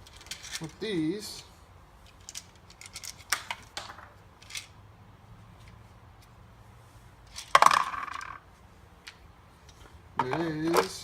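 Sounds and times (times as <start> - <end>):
metal screws clicking and rattling: 0.0 - 0.8, 2.0 - 4.8.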